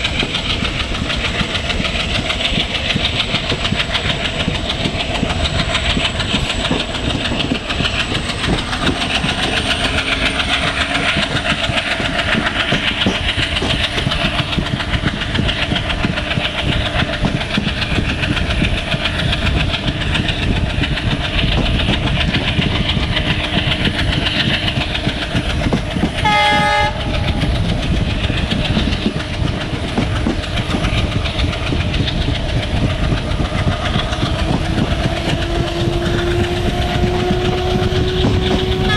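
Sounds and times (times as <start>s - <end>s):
train rumbling on rails: 0.0s - 38.9s
locomotive horn blast: 26.2s - 27.2s, 38.6s - 38.9s.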